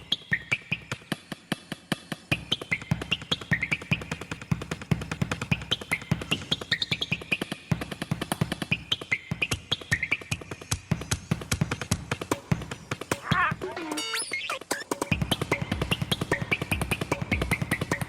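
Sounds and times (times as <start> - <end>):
lively percussive music: 0.0 - 18.0.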